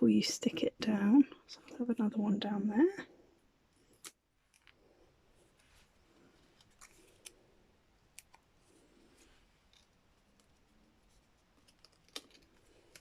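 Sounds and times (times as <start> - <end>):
paper handling: 9.2 - 13.0.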